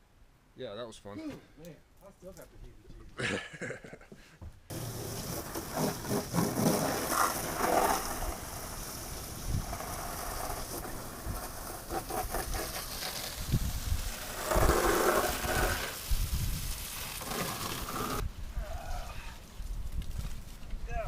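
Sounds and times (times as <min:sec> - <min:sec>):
rustling: 0:04.6 - 0:18.3
steady hiss: 0:04.7 - 0:21.0
wind buffeting microphone: 0:09.0 - 0:12.6, 0:13.3 - 0:16.9, 0:18.2 - 0:21.0.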